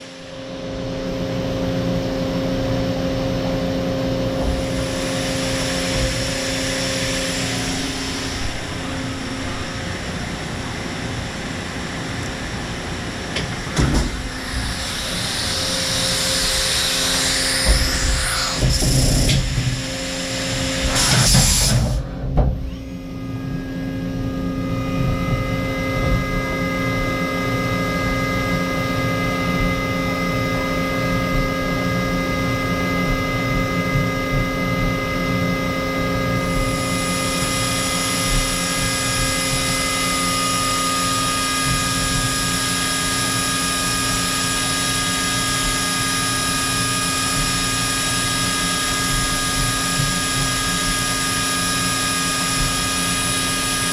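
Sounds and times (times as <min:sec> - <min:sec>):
machine hum with whining tones: 0:00.0 - 0:53.9.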